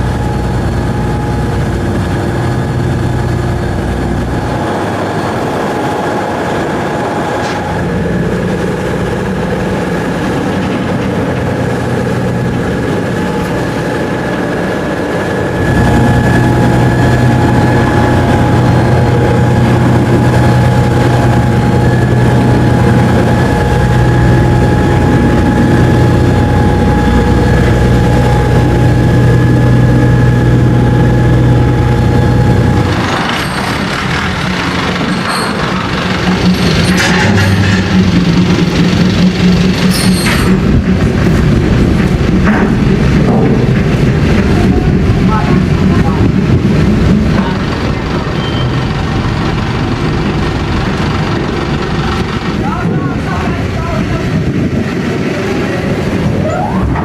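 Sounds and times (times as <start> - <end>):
ferry engine humming: 0.0 - 57.0.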